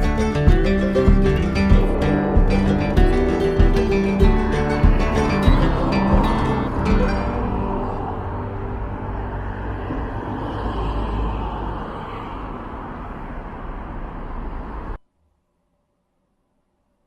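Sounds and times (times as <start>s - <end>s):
road traffic rumble: 0.0s - 15.0s.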